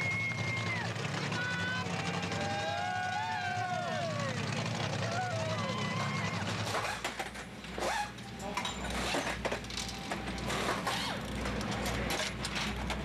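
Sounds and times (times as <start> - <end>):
mechanical clicks and clatter: 6.4 - 13.0.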